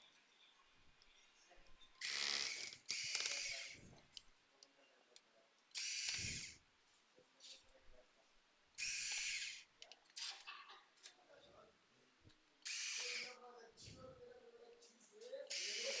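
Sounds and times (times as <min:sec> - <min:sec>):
electric screwdriver whirring: 0:02.0 - 0:03.8, 0:05.8 - 0:06.6, 0:08.8 - 0:09.6, 0:12.6 - 0:13.4, 0:15.5 - 0:16.0.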